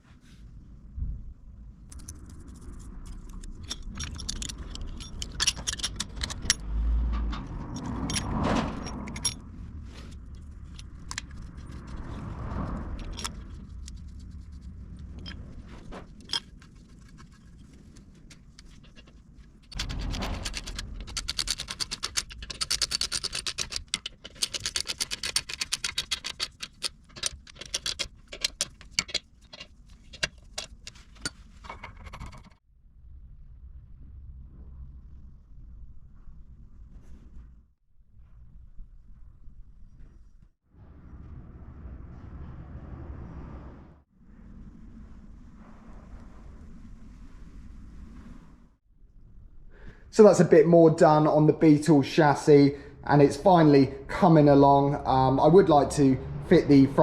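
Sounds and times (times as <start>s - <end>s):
metal tools clinking and scraping: 3.1s - 11.7s, 18.6s - 32.5s
fast metallic clicking: 18.3s - 32.6s.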